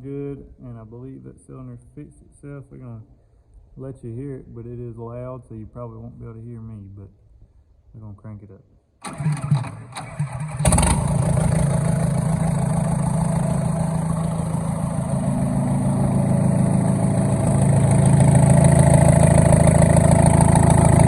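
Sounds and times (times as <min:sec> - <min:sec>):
diesel engine running loud: 0:10.5 - 0:21.0.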